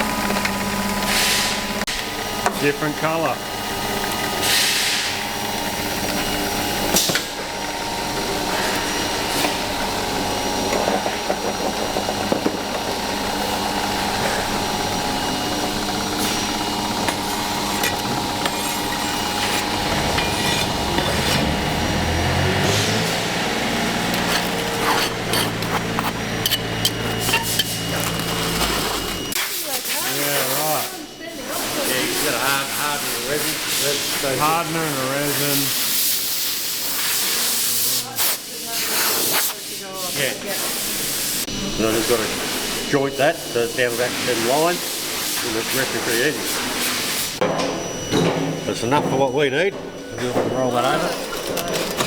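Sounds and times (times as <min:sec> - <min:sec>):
machinery humming: 0:00.0 - 0:36.8, 0:40.3 - 0:52.0
scraping: 0:17.8 - 0:29.4.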